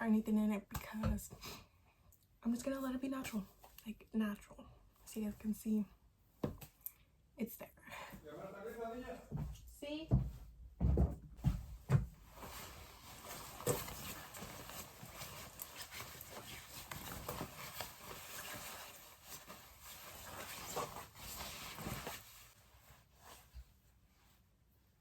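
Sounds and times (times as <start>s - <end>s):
rustling and handling noise: 8.1s - 25.0s.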